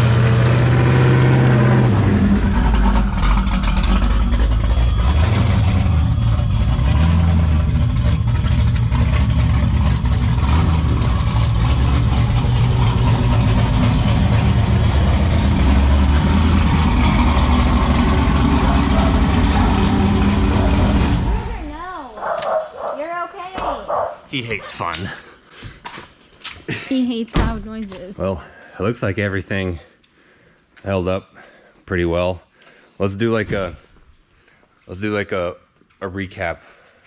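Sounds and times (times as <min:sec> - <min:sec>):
car engine running loudly: 0:00.0 - 0:21.6.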